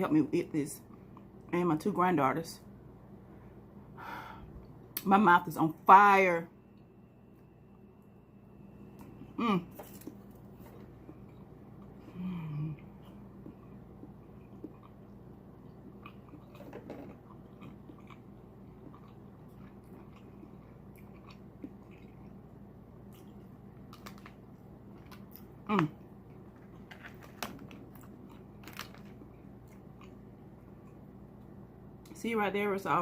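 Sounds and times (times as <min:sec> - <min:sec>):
person chewing and lip-smacking: 0:09.0 - 0:23.4
person humming mm: 0:09.4 - 0:09.8, 0:12.0 - 0:12.9.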